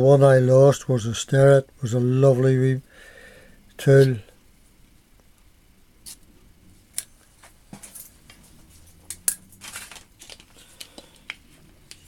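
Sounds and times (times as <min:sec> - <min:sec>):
packaging crinkling: 0:09.6 - 0:12.0.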